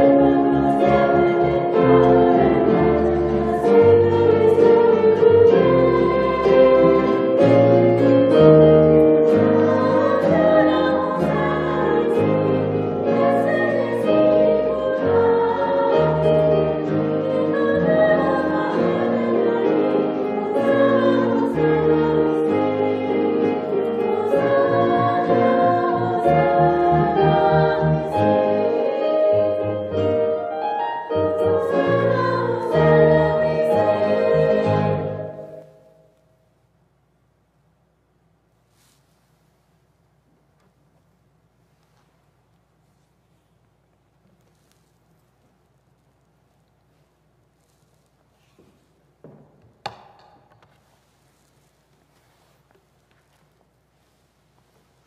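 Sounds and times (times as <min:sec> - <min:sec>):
choir singing a hymn: 0:00.0 - 0:35.7
musical accompaniment: 0:00.0 - 0:36.2.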